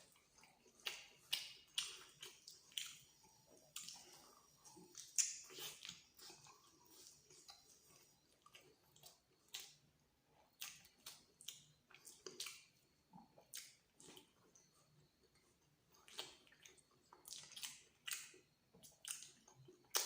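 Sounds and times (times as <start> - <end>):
person chewing food: 0.0 - 20.0
wet mouth smacks and clicks: 4.9 - 6.0.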